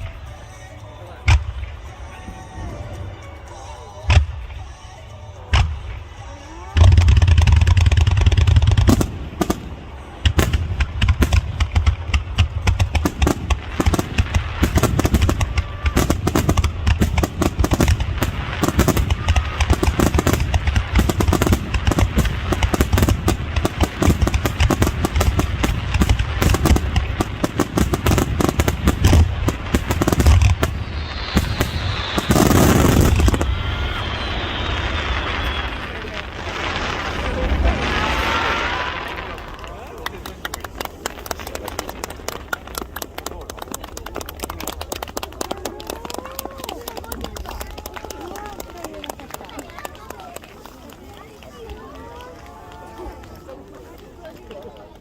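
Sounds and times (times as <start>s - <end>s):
rapid firework bangs and crackles: 4.0s - 55.0s
firework booms: 6.7s - 43.0s
deep rumble: 24.4s - 40.1s
loud rushing noise: 27.6s - 39.8s.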